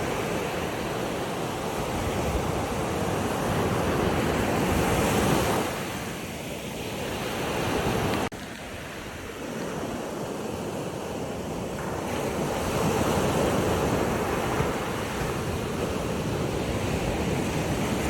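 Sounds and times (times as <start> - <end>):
sea waves washing in: 0.0 - 18.0
wind buffeting microphone: 9.0 - 18.0.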